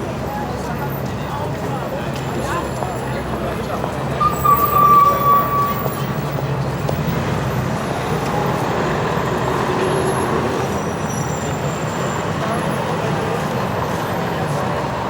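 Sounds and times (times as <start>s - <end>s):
faint voices of passers-by: 0.0s - 15.0s
traffic engines running: 0.0s - 15.0s
brief high tone: 4.2s - 6.0s.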